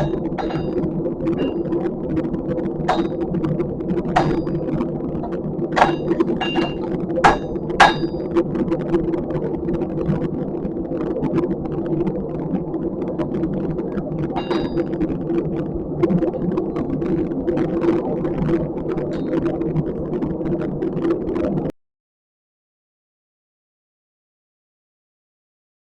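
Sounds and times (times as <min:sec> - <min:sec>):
steady mechanical hum: 0:00.0 - 0:21.7.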